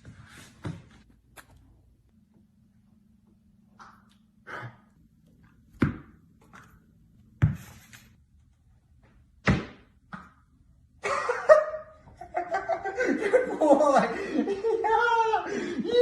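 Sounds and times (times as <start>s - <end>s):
people laughing: 11.0s - 16.0s.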